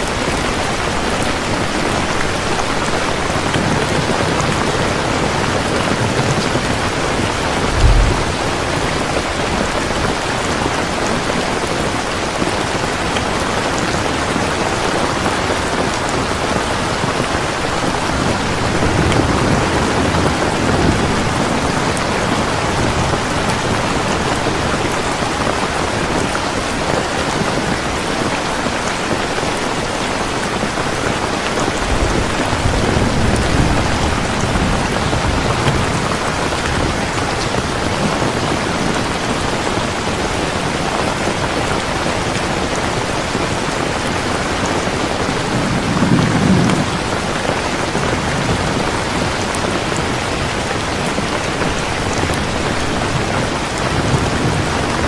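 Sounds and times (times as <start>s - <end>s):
heavy rain falling: 0.0s - 55.0s
thunder rumbling: 6.0s - 10.2s, 45.3s - 47.6s.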